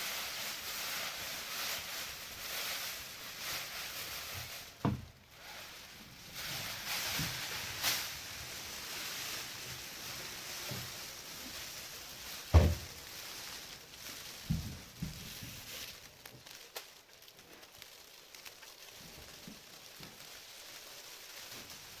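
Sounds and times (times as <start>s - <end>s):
foil rustling and crinkling: 0.0s - 22.0s
dull thumps: 4.8s - 5.2s, 12.5s - 13.0s.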